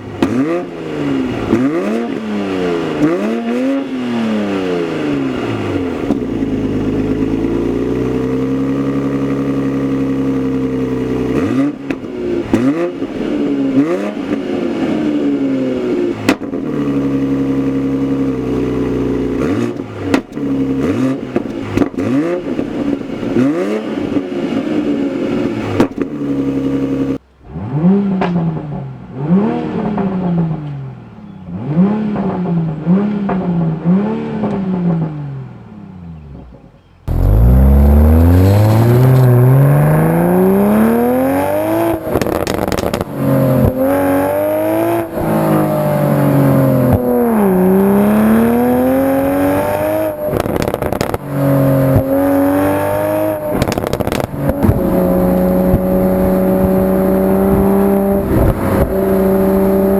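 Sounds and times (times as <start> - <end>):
car engine revving: 0.0 - 30.8, 37.1 - 59.9
car engine accelerating: 0.0 - 30.9, 31.5 - 59.9
exhaust crackles and pops: 5.9 - 14.5, 16.2 - 27.4, 37.1 - 59.7.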